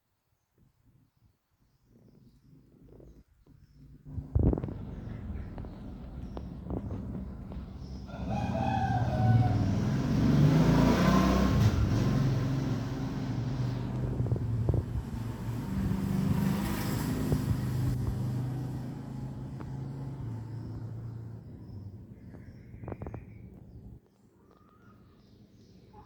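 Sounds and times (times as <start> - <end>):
passing vehicle engine: 4.0 - 22.2
rooster crowing: 8.1 - 10.3.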